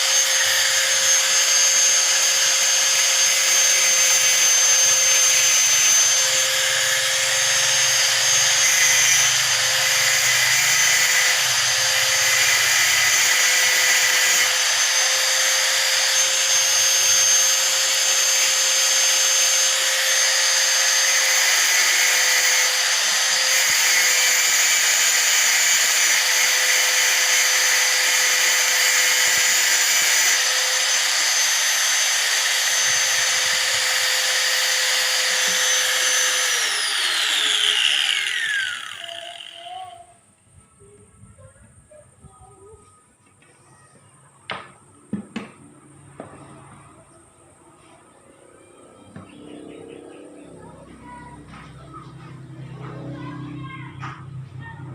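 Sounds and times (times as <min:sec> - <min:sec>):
angle grinder grinding steel: 0:00.0 - 0:40.2.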